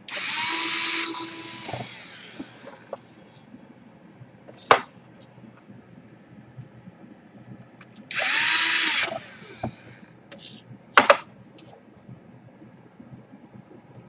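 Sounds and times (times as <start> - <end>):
electric screwdriver whine: 0.1 - 3.0, 8.1 - 10.0.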